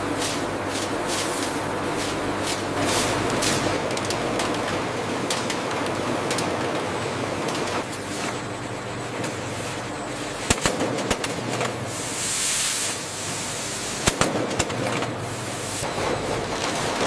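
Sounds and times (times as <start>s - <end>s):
machinery humming: 0.0s - 17.0s
burst of hiss: 11.9s - 14.2s.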